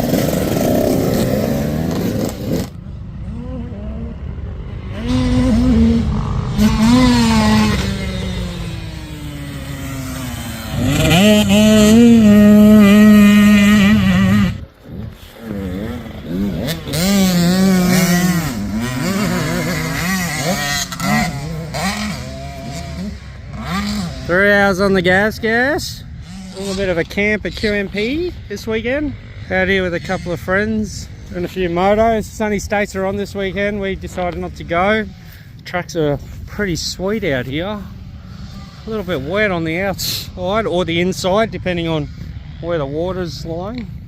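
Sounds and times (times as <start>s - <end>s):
dirt bike engines revving: 0.0s - 44.0s.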